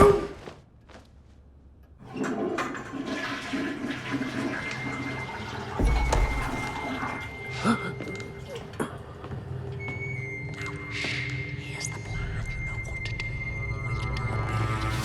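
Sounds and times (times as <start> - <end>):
low thud: 5.8 - 6.8.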